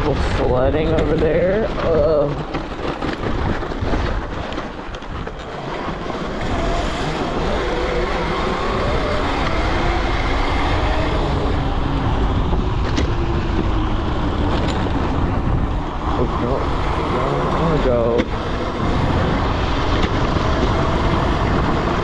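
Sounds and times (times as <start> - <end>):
wind on microphone: 0.0 - 22.0
electric motor whining: 5.4 - 22.0.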